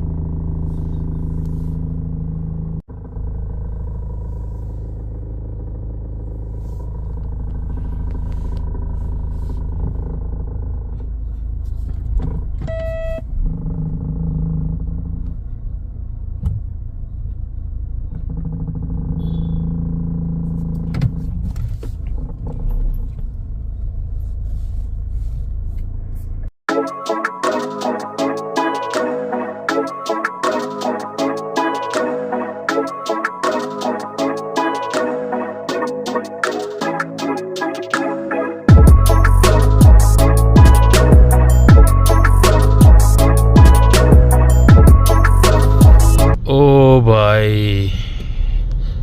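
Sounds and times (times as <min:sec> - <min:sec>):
car engine and road rumble: 0:00.0 - 0:26.6, 0:38.6 - 0:49.0
car horn beep: 0:12.7 - 0:13.2.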